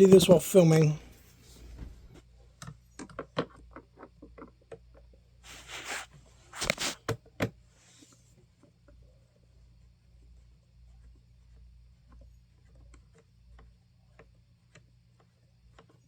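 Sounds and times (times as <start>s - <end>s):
scraping rustle: 5.5s - 7.0s.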